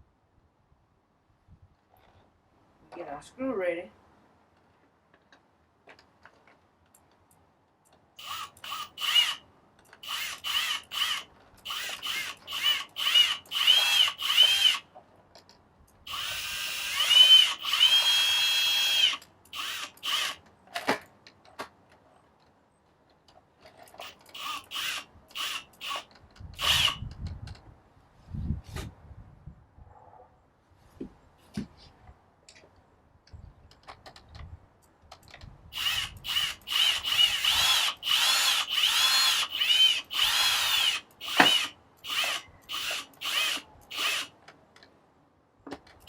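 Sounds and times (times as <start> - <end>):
cordless drill whining: 8.2 - 9.4, 10.0 - 14.8, 16.1 - 20.4, 24.0 - 27.0, 35.8 - 44.3.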